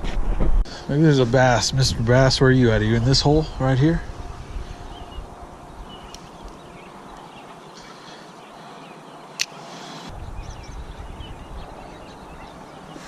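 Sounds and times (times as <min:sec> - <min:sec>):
wind rumble on microphone: 0:00.0 - 0:00.6, 0:01.2 - 0:07.2, 0:10.1 - 0:13.0
sharp click: 0:09.4 - 0:09.6.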